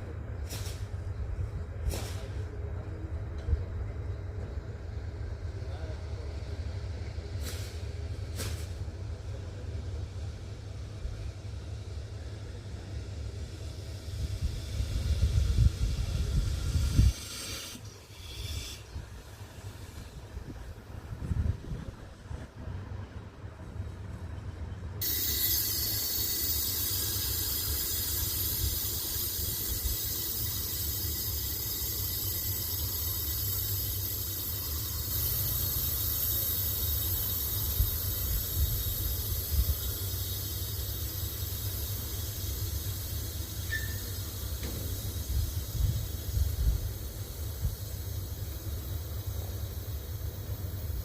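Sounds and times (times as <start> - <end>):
diesel locomotive engine rumble: 0.0 - 51.0
loud high hiss: 9.8 - 21.1, 25.0 - 51.0.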